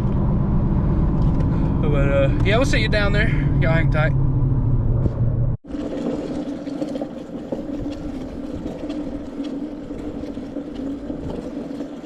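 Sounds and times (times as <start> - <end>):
steady low engine drone: 0.0 - 5.6.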